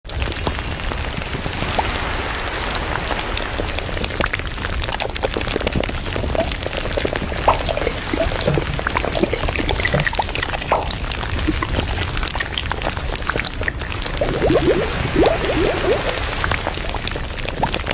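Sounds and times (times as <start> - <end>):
water drops pattering: 4.2 - 17.9.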